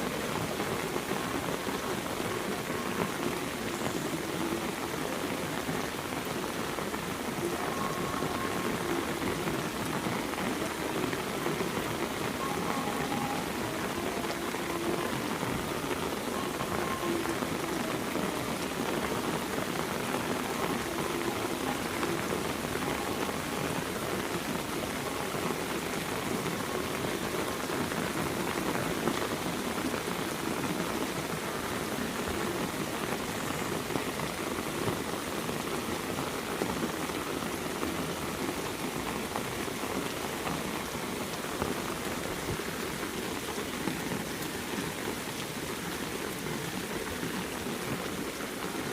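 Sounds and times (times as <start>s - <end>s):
heavy rain pattering: 0.0s - 48.9s.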